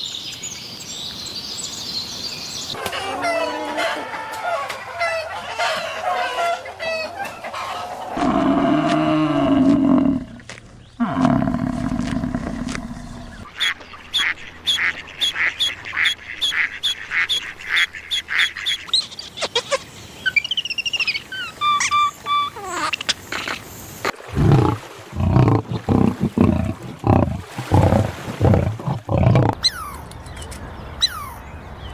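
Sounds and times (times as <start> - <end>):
loud deep animal call: 7.8 - 10.4, 11.0 - 18.0, 24.3 - 29.7
birdlike honking and quacking: 13.4 - 19.7.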